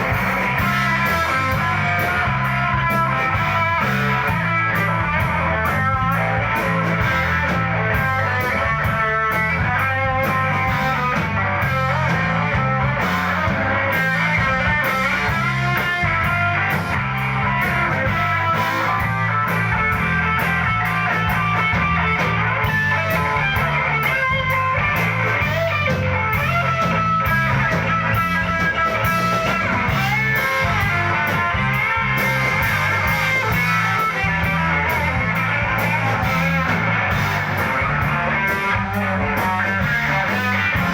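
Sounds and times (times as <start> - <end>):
rock band playing: 0.0 - 40.9.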